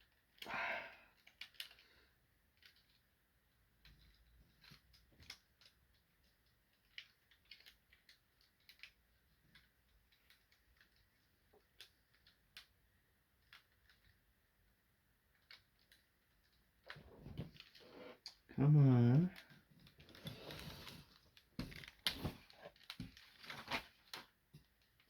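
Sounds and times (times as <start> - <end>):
plastic toy parts clicking: 1.2 - 1.8, 2.4 - 3.1, 3.8 - 14.3, 15.3 - 16.9.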